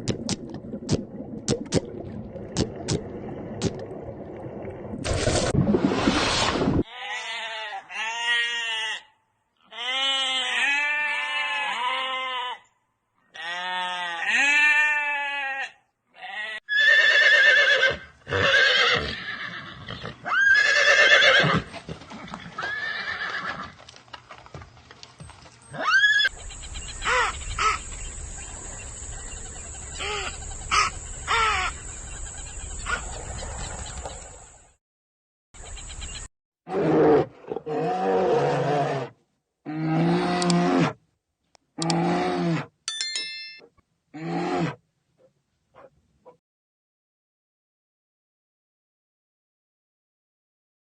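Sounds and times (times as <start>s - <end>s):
animal calls: 25.7s - 28.0s, 29.1s - 33.8s.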